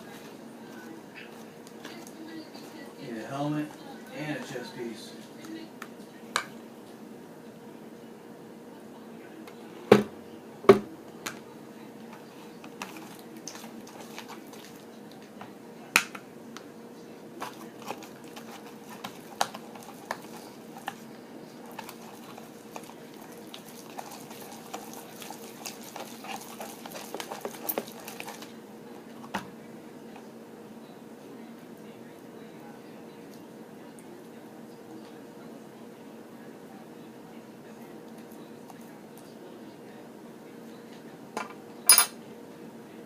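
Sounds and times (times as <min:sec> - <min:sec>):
slime stirring: 0:12.1 - 0:15.4, 0:17.3 - 0:28.8.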